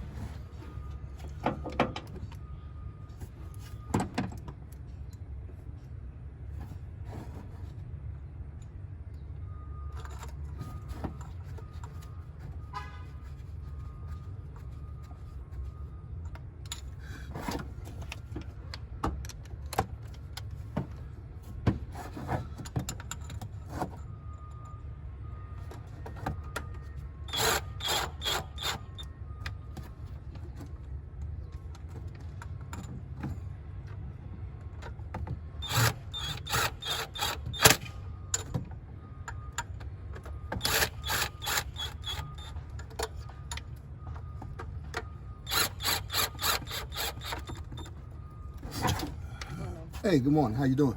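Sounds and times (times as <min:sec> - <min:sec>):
hand ratchet clicking: 0:45.5 - 0:47.6.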